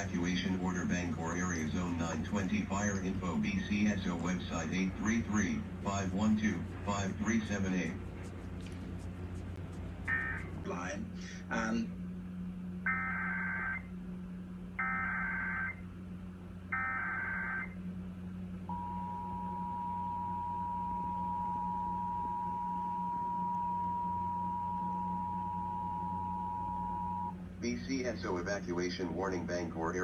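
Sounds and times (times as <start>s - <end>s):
low hum: 0.0s - 30.0s
two-tone attention signal: 18.7s - 27.4s.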